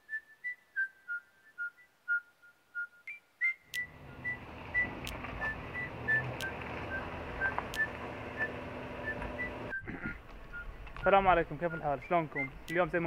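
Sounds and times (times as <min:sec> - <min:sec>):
whistled tune: 0:00.0 - 0:12.9
sharp clicks: 0:03.7 - 0:03.9, 0:05.0 - 0:05.5, 0:06.2 - 0:06.6, 0:07.4 - 0:08.0, 0:12.6 - 0:12.9.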